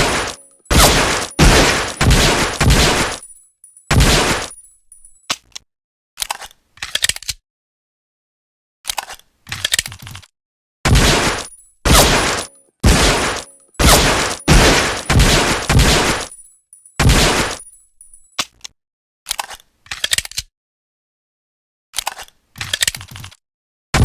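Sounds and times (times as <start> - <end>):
pistol shots: 0.0 - 3.3, 3.9 - 4.5, 10.9 - 16.4.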